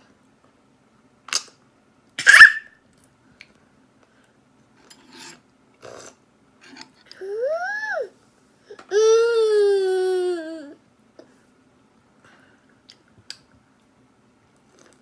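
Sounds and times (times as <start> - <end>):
toddler breathy vocal sounds: 7.2 - 8.1.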